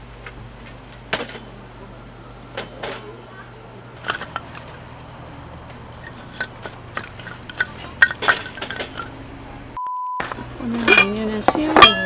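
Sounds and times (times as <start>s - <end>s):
dishes and utensils clinking: 6.0s - 9.2s, 10.2s - 12.0s.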